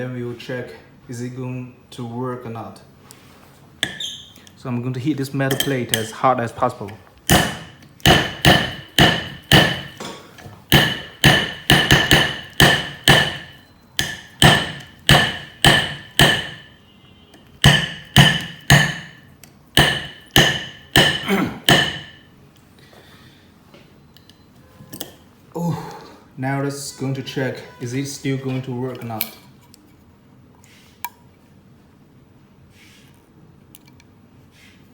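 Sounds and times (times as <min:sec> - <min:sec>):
screwdriver clanging on metal plate: 0:05.5 - 0:06.1.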